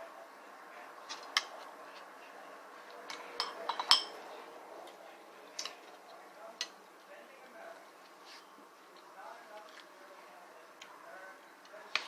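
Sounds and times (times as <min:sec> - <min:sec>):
tableware clinking: 0:03.1 - 0:04.3.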